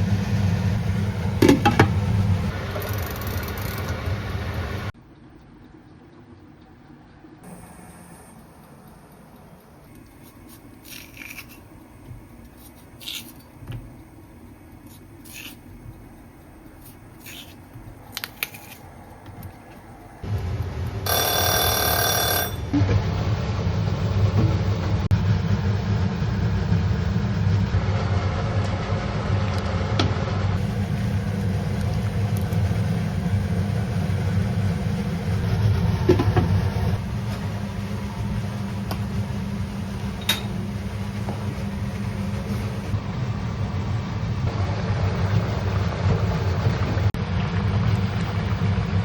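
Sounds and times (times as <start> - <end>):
electronic tone: 21.0 - 22.8
kitchen appliance humming: 28.6 - 43.0.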